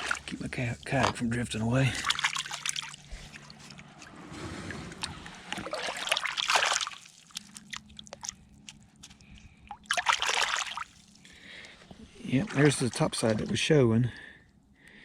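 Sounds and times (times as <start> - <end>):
hands splashing in water: 0.0 - 0.4, 1.9 - 4.1, 4.9 - 8.8, 9.7 - 11.2, 12.3 - 13.4.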